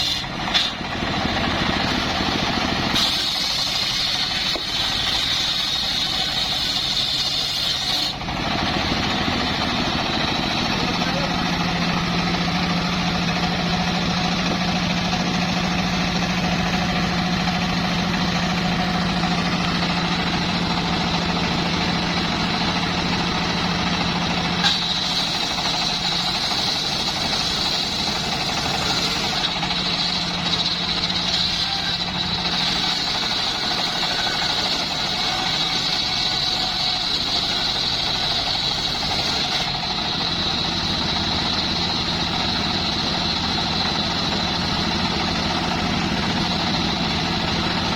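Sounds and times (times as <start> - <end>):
engine humming: 0.0 - 47.9
steady high whine: 8.0 - 31.4.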